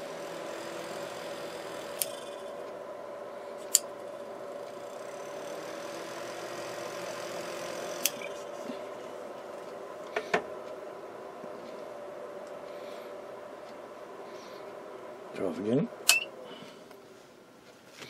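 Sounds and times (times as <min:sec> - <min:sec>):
cooling fan hum: 0:00.0 - 0:18.0.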